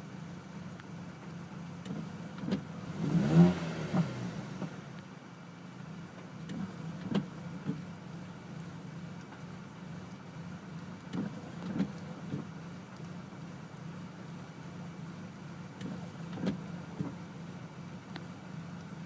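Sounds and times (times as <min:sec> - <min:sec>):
engine revving: 0:01.8 - 0:04.9.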